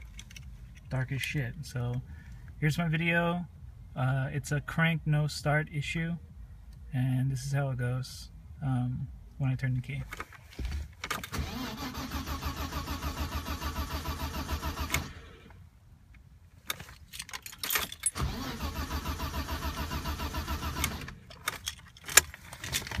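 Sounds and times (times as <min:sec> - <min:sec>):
car starter cranking engine: 0:11.1 - 0:15.6, 0:17.7 - 0:23.0.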